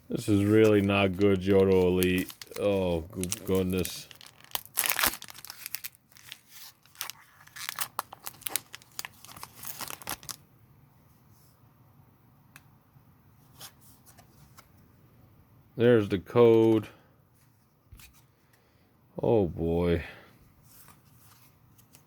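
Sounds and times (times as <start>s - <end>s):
foil wrapper tearing and crinkling: 0.2s - 10.4s.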